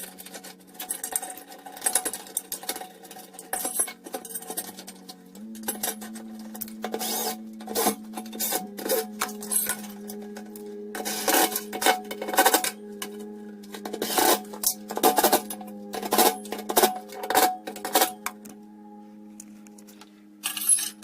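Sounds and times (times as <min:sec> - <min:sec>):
metallic clinks and clatters: 0:00.0 - 0:08.4, 0:20.4 - 0:21.0
steady low hum: 0:00.0 - 0:21.0.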